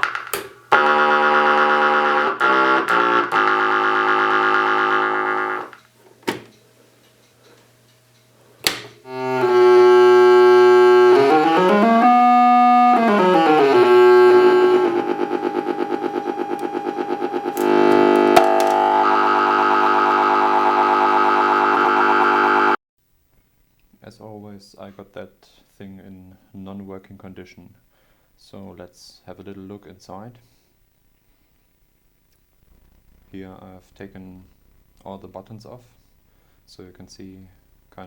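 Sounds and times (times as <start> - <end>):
clicks: 0.0 - 0.6
buzzy synthesizer notes: 9.0 - 22.8.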